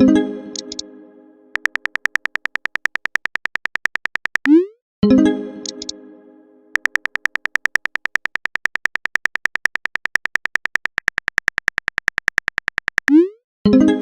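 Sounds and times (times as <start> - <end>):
phone keyboard typing clicks: 0.6 - 0.8, 1.6 - 4.6, 5.6 - 5.9, 6.8 - 13.3.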